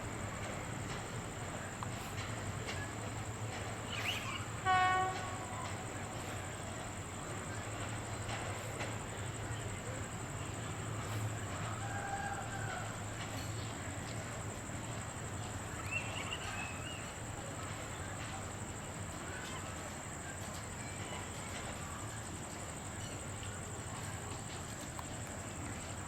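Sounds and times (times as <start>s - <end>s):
high bird call: 3.9s - 5.6s
distant rooster crowing: 11.5s - 13.4s.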